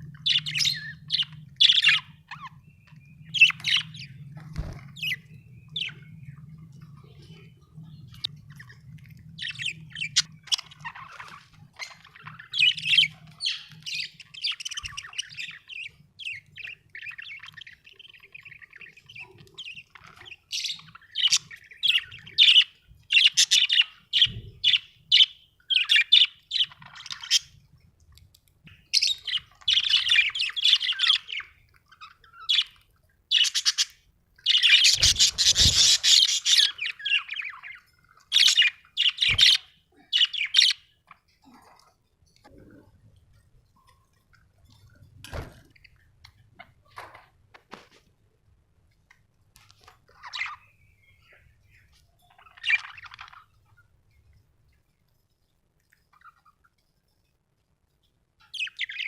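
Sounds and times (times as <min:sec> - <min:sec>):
budgerigars chirping and chattering: 0:00.0 - 0:27.6, 0:28.6 - 0:41.7, 0:50.1 - 0:53.8, 0:56.1 - 0:56.7, 0:58.4 - 0:59.0.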